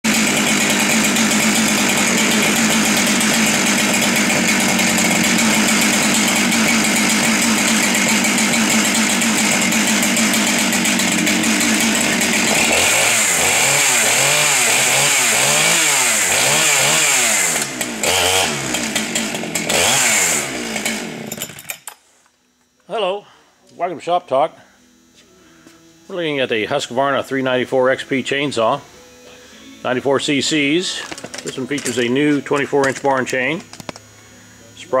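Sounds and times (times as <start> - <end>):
chainsaw engine revving: 0.0 - 21.8.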